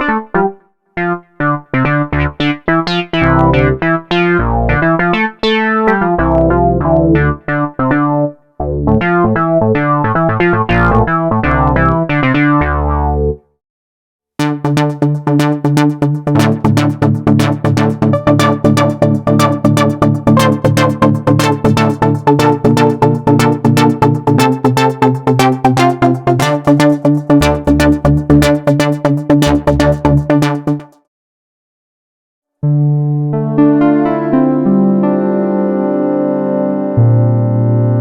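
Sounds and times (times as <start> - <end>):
plucked synth notes and chords: 0.0 - 13.4, 14.4 - 31.0, 32.6 - 38.0
steady synth bass: 1.0 - 13.4, 14.4 - 31.0, 36.7 - 38.0
arpeggiated synth sequence: 14.4 - 31.0.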